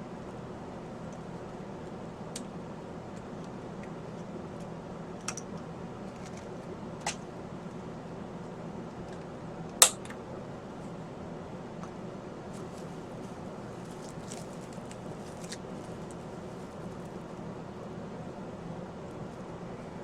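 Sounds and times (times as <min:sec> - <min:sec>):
low room hum: 0:00.0 - 0:20.0.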